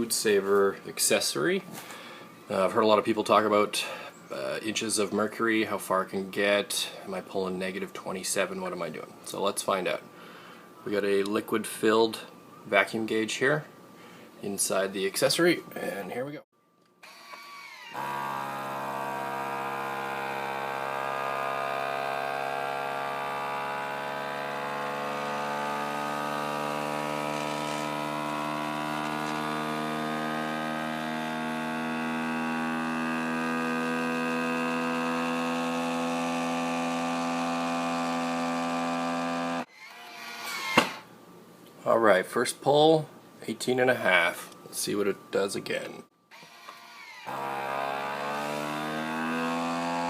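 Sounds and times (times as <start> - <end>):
vacuum pump motor humming: 17.6 - 39.6, 47.3 - 50.0.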